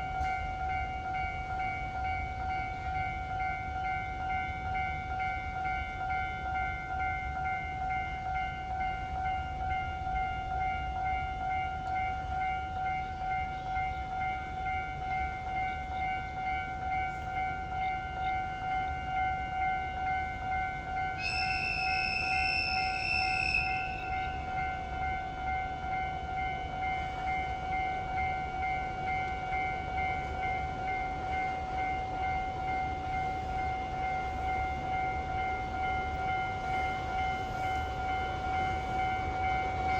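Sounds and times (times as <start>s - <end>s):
freight train rumbling past: 0.0s - 39.9s
level crossing alarm ringing: 0.0s - 39.9s
high-pitched train horn: 17.3s - 39.9s.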